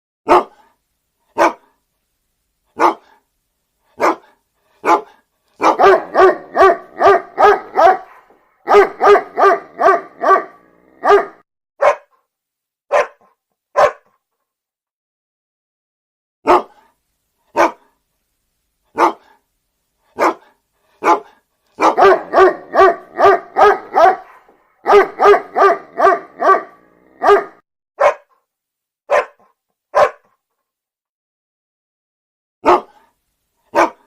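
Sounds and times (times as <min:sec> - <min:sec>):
dog barking: 0:00.2 - 0:01.8, 0:02.7 - 0:03.2, 0:04.0 - 0:12.2, 0:12.9 - 0:14.2, 0:16.4 - 0:18.0, 0:18.9 - 0:19.4, 0:20.1 - 0:28.4, 0:29.1 - 0:30.4, 0:32.6 - 0:34.0.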